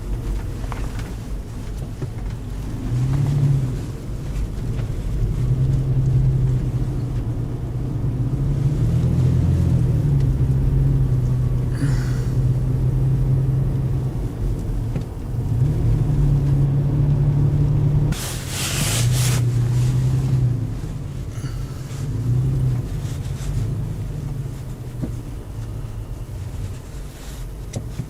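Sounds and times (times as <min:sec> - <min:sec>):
car engine running: 0:00.0 - 0:28.0
short hiss: 0:18.1 - 0:19.6.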